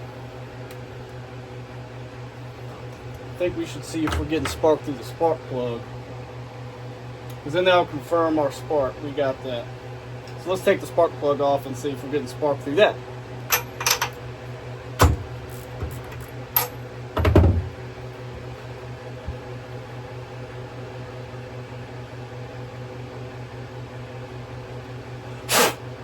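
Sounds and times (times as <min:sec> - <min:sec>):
steady electrical hum: 0:00.0 - 0:26.0
heavy knock: 0:17.2 - 0:17.8.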